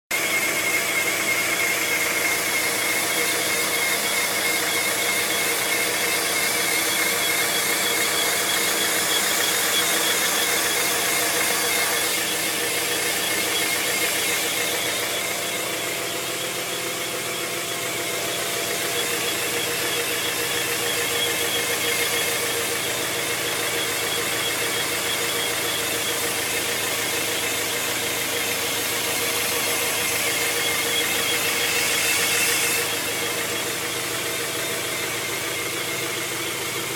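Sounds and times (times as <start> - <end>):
car engine running: 0.1 - 36.9
transmission whine: 2.0 - 36.9.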